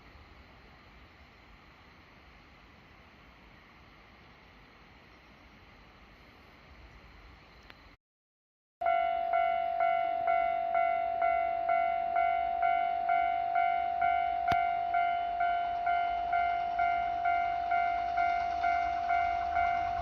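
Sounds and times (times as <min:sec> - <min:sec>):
level crossing warning bell: 0:08.8 - 0:20.0.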